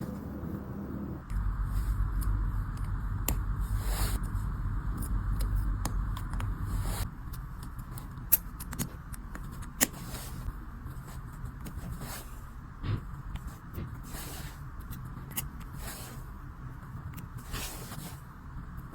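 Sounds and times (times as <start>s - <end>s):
low hum: 0.0s - 7.4s, 12.6s - 14.1s.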